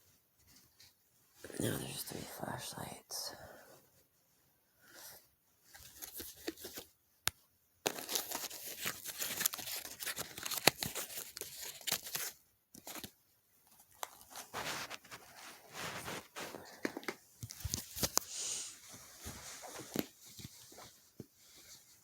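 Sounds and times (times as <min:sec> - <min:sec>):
crackling rustling noise: 0:00.0 - 0:02.9, 0:07.8 - 0:22.0.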